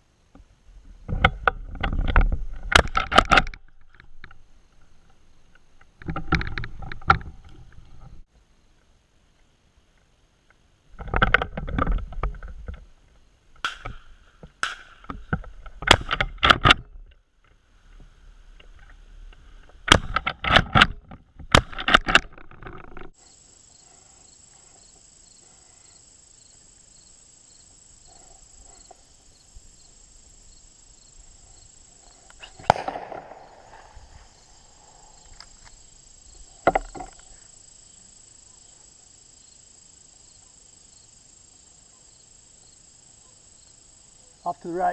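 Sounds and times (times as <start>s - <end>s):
insects droning: 0.0s - 44.9s
shotgun shots: 32.4s - 35.1s.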